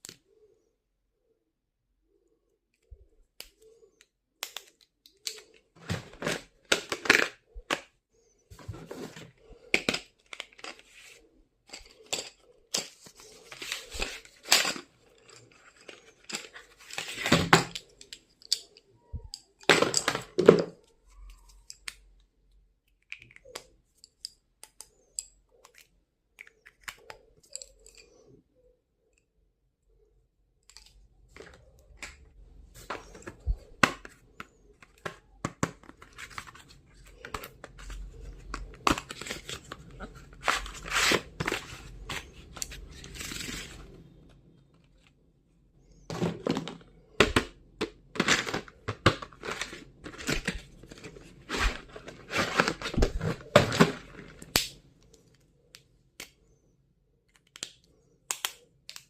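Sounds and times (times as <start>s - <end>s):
packaging rustling and tearing: 48.2s - 54.5s.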